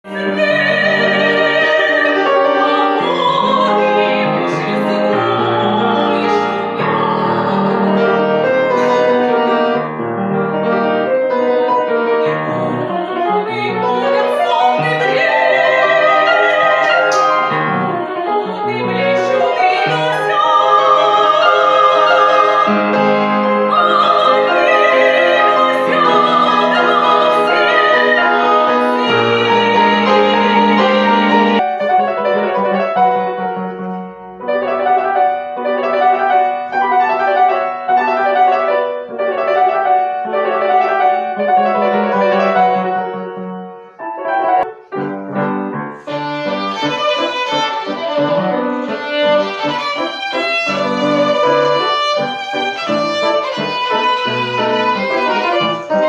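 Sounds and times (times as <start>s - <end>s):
soprano singing with vibrato: 0.0s - 9.8s, 12.1s - 31.6s, 46.0s - 56.0s
piano accompaniment: 0.0s - 56.0s.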